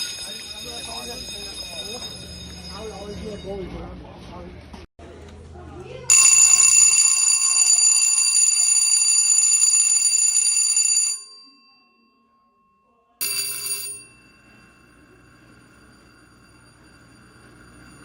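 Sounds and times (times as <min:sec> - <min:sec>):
electric school bell ringing: 0:00.0 - 0:03.6, 0:06.1 - 0:18.0.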